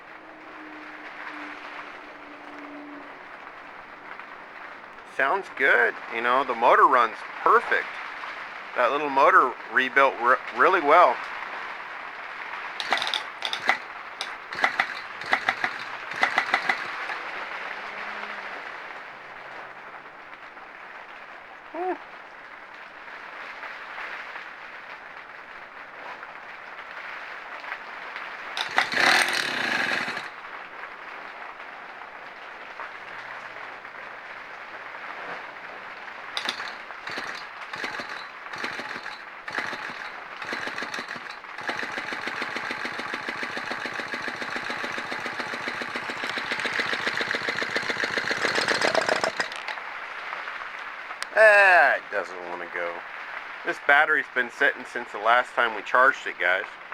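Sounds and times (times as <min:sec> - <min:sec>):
small engine cranking: 0:12.8 - 0:17.3, 0:28.6 - 0:30.4, 0:36.4 - 0:49.8.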